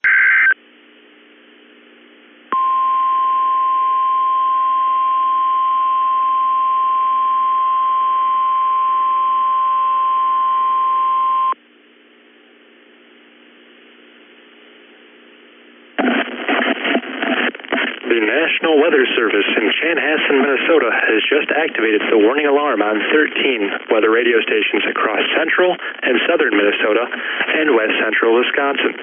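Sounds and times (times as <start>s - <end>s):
faint low hum: 0.6s - 28.1s.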